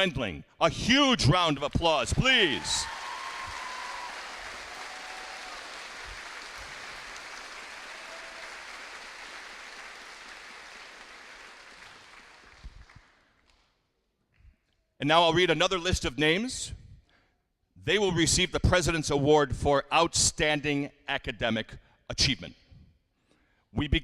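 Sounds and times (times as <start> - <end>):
audience applauding: 1.7 - 13.2.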